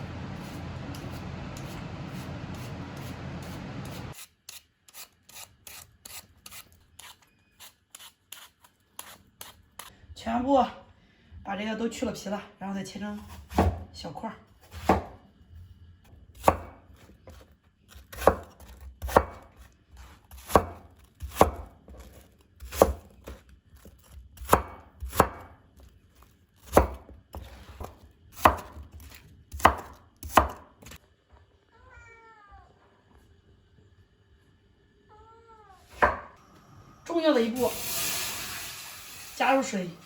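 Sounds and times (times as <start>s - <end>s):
knife chopping on cutting board: 13.3s - 13.8s, 14.7s - 15.2s, 16.4s - 17.4s, 18.1s - 25.5s, 26.6s - 31.0s, 36.0s - 36.3s.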